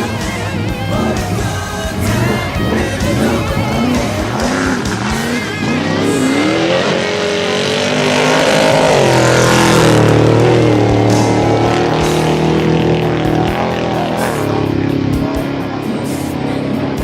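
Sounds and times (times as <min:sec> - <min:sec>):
background music: 0:00.0 - 0:17.0
truck engine revving: 0:00.0 - 0:17.0.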